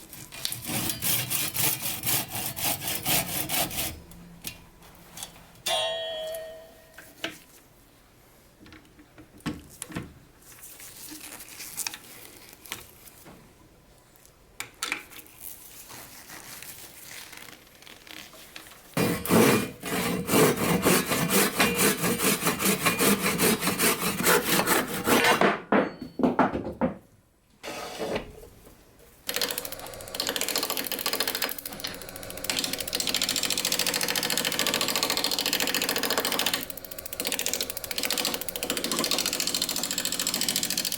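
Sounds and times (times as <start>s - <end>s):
knocks: 25.2s - 27.1s
lathe tool cutting with rattling chatter: 29.3s - 40.9s.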